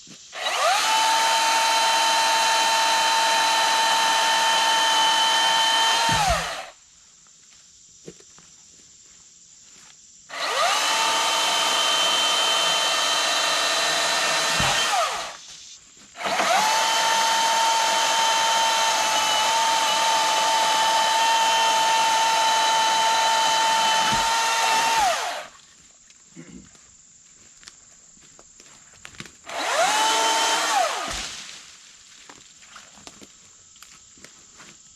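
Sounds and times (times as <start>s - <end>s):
battery chainsaw whining: 0.3s - 6.8s, 10.3s - 15.4s, 16.2s - 25.6s, 29.4s - 31.3s.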